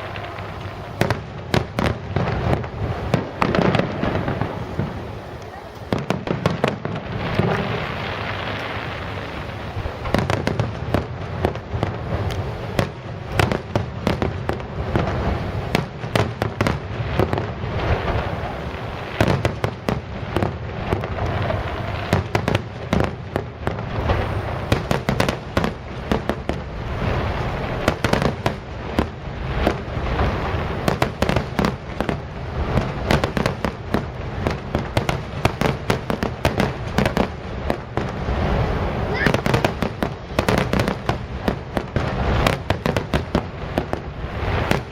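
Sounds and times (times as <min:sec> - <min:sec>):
low rumble of echoing booms: 0:00.0 - 0:08.5
firework bangs and crackles: 0:00.0 - 0:44.9.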